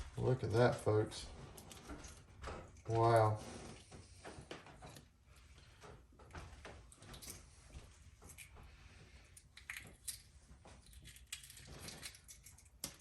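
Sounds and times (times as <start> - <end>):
egg shell being peeled: 9.2 - 13.0.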